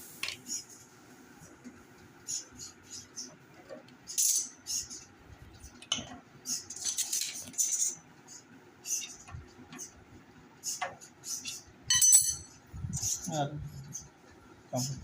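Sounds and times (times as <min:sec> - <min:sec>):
small metal parts clinking: 0:11.9 - 0:12.6.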